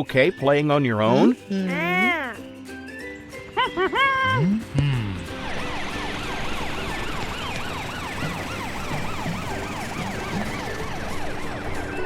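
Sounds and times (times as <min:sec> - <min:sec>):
cartoon fire truck siren: 0:05.0 - 0:12.0
cartoon police siren: 0:05.2 - 0:12.0.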